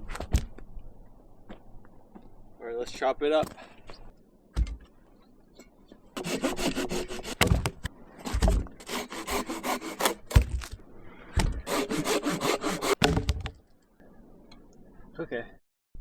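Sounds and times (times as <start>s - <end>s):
hand saw cutting log: 6.2s - 7.6s, 8.3s - 10.4s, 11.6s - 13.0s.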